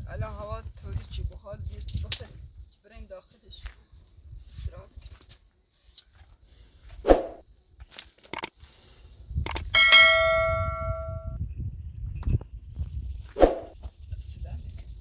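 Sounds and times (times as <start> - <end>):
metal cookware ringing: 9.8 - 11.3.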